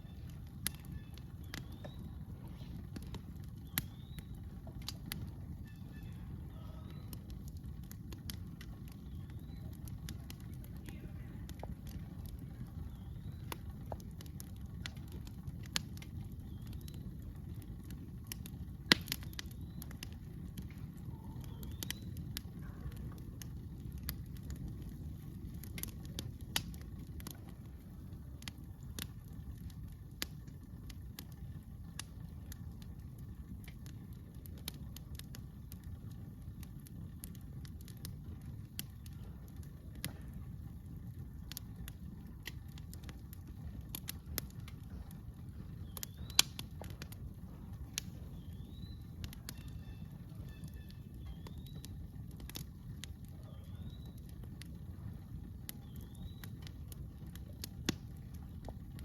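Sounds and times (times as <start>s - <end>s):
campfire crackling: 0.0s - 59.0s
low fire rumble: 0.0s - 59.0s.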